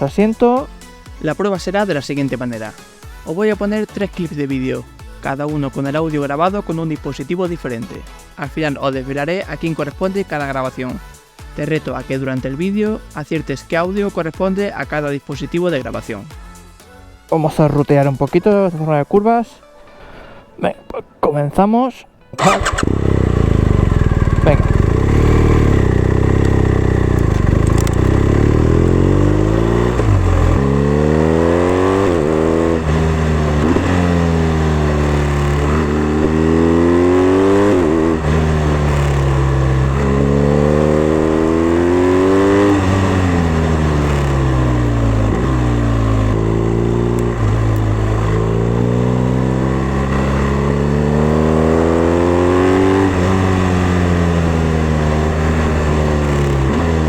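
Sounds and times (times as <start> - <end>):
motorcycle engine accelerating: 22.4 - 57.0.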